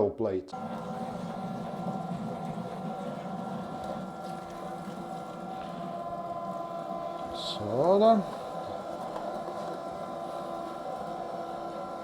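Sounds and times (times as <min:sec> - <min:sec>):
electric meat grinder running: 0:00.5 - 0:12.0.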